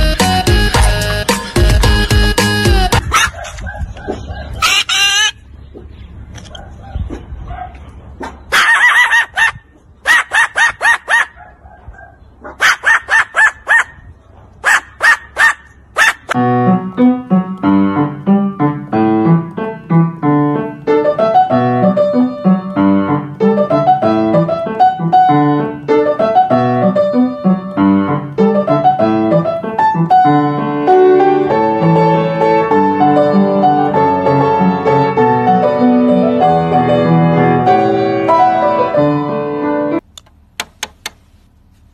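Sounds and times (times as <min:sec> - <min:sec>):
piano music: 0:00.0 - 0:03.1, 0:16.4 - 0:40.0
bird clucking: 0:03.0 - 0:14.0.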